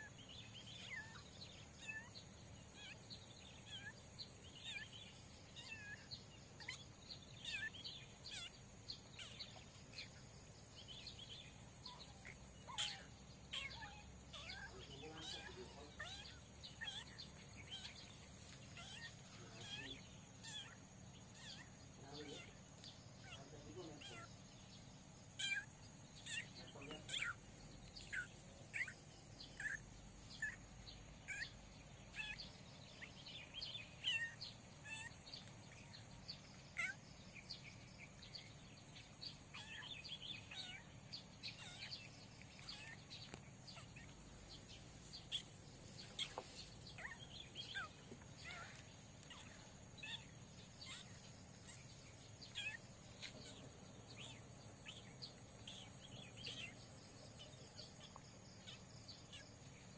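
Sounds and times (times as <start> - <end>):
high insect trill: 0.0 - 59.9
small birds chirping: 0.0 - 59.9.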